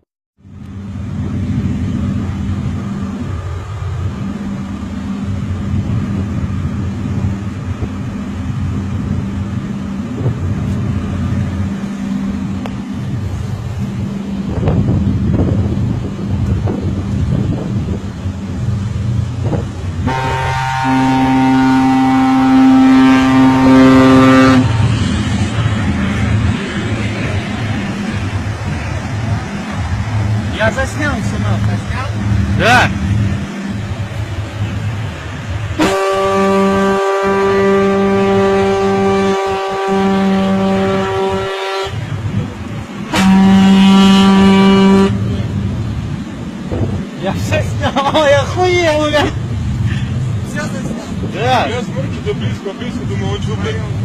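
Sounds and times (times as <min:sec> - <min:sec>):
low rumble: 0:00.4 - 0:54.0
ship's horn blast: 0:04.1 - 0:28.8, 0:35.3 - 0:46.3.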